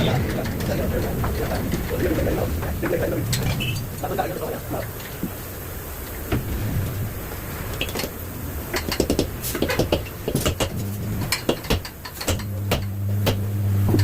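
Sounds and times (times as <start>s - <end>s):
sharp clicks and knocks: 7.7s - 14.0s
low steady hum: 10.2s - 14.0s.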